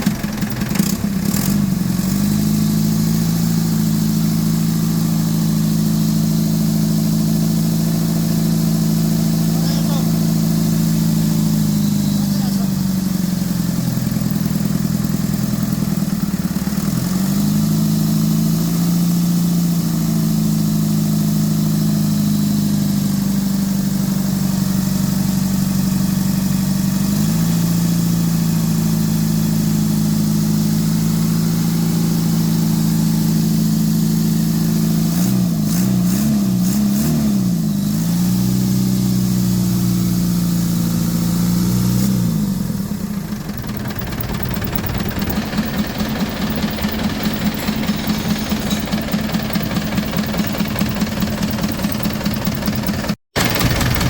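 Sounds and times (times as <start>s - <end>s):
diesel engine idling: 0.0s - 17.1s, 28.3s - 35.1s, 42.5s - 54.0s.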